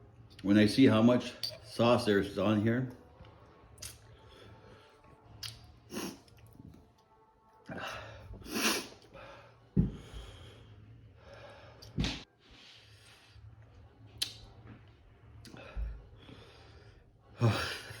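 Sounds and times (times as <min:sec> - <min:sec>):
person chewing: 0:05.3 - 0:06.6
person sniffing and breathing: 0:08.4 - 0:09.0.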